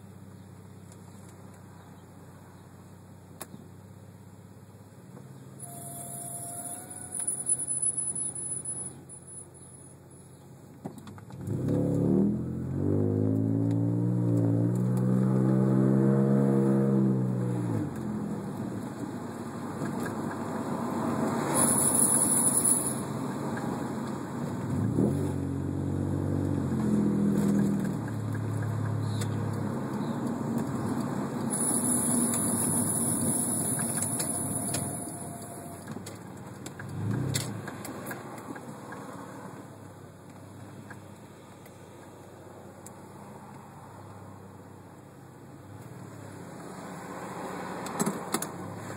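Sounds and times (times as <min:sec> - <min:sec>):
high-pitched brake squeal: 0:05.6 - 0:10.0, 0:21.5 - 0:23.1, 0:31.5 - 0:35.9
car engine pulling: 0:11.2 - 0:42.2.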